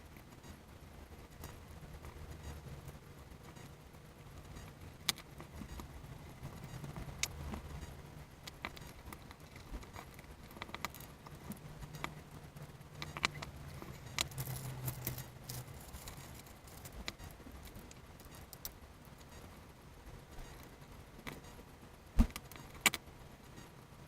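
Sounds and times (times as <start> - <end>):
low steady hum: 0.0 - 24.0
small parts clicking and clinking: 13.0 - 19.5.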